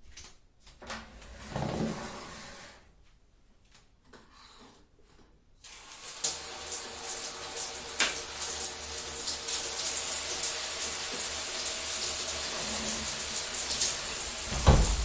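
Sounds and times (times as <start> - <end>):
shower spray hissing and splattering: 5.7 - 15.0.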